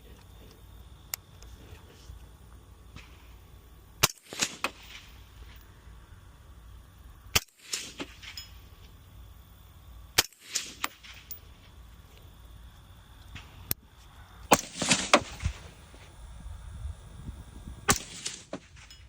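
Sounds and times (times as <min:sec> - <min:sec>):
suppressed rifle shots: 0:04.0 - 0:05.2, 0:07.3 - 0:08.5, 0:14.5 - 0:15.8, 0:17.9 - 0:19.0
echoing cracks: 0:14.5 - 0:15.7, 0:17.9 - 0:18.8.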